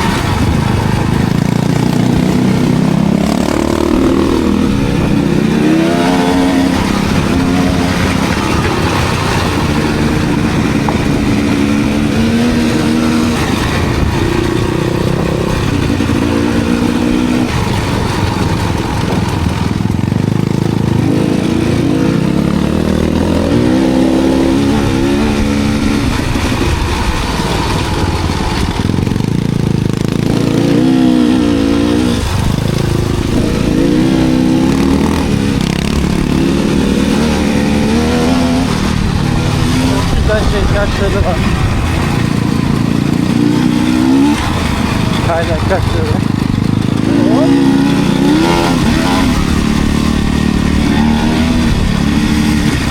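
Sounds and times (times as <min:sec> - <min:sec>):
dirt bike engine revving: 0:00.0 - 0:52.9.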